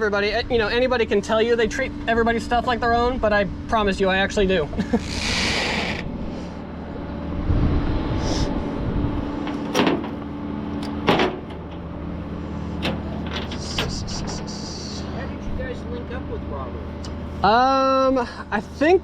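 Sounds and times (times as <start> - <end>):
vehicle engine idling: 8.2 - 19.0
sharp knocks: 9.4 - 11.9.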